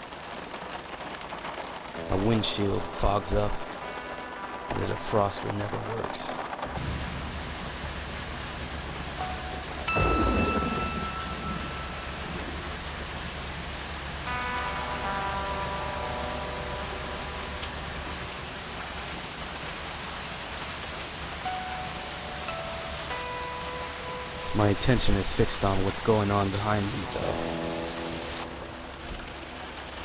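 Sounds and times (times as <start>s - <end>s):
heavy rain: 0.0s - 30.0s
thunderclap: 6.4s - 15.2s.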